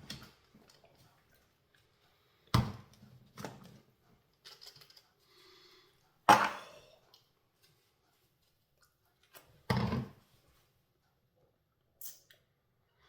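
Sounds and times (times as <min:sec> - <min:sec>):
kitchen items knocking: 0:06.3 - 0:06.9.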